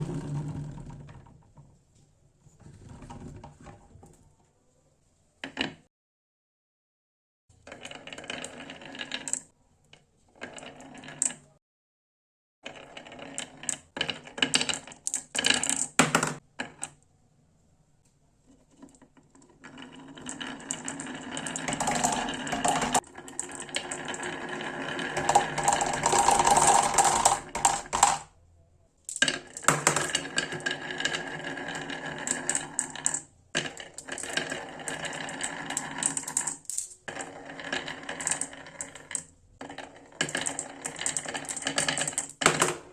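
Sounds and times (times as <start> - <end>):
marbles rattling down marble run: 7.7 - 9.5, 19.5 - 28.3, 29.1 - 42.8.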